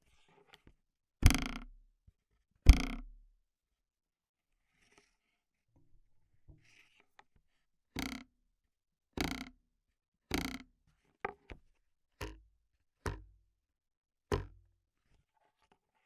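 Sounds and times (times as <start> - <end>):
foley prop hits: 2.7 - 3.1, 8.0 - 8.2, 9.2 - 9.5, 10.3 - 10.6, 13.1 - 13.3, 14.3 - 14.6.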